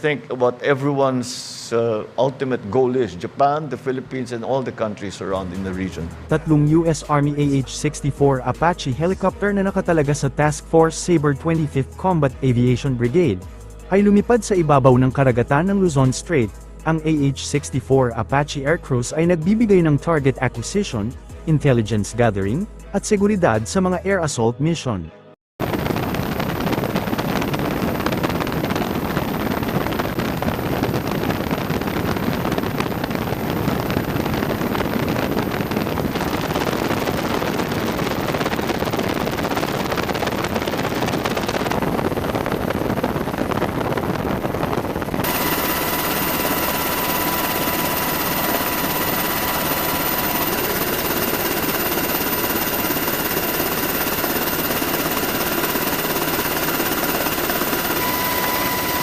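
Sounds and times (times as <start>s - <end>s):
helicopter rotor and engine: 25.6s - 59.0s
turbine whine: 25.6s - 59.0s.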